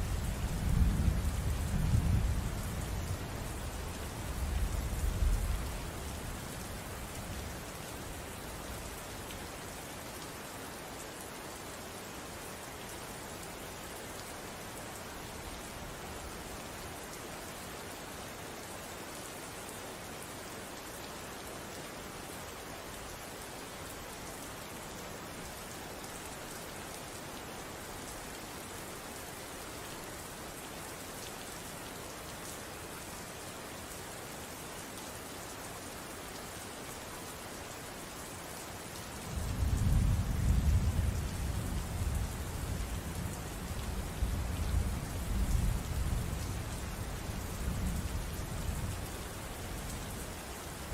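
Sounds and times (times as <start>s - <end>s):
low rumble of thunder: 0.0s - 5.8s, 39.3s - 49.0s
steady rain falling: 0.0s - 50.9s.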